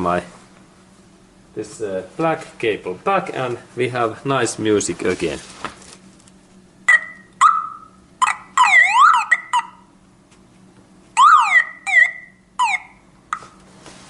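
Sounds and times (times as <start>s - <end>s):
car alarm siren wailing: 6.9s - 9.9s, 11.2s - 13.1s.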